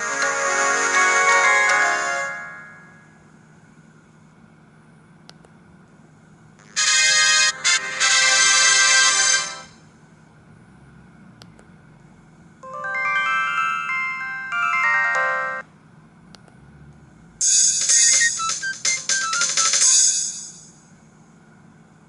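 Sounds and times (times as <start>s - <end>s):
synthesized ringtone melody: 0.0s - 3.0s, 12.6s - 15.6s, 17.4s - 20.6s
drum and cymbal hits: 17.4s - 20.8s.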